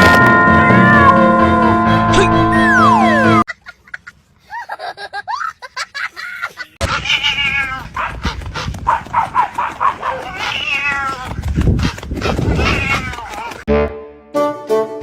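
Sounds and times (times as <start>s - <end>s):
high-pitched animal cries: 0.6s - 1.3s, 6.8s - 7.9s, 10.1s - 11.3s, 12.3s - 13.6s
background noise: 3.5s - 13.6s.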